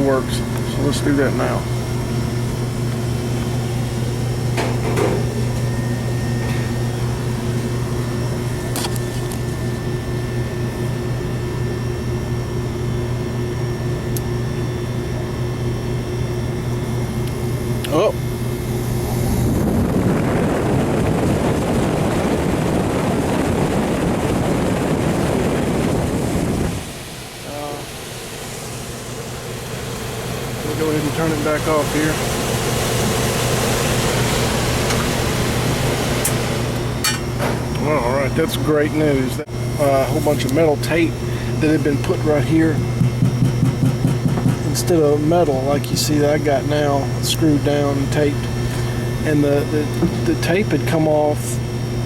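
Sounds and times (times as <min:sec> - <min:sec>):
blower motor humming: 0:00.0 - 0:52.0
low hum: 0:16.9 - 0:35.1.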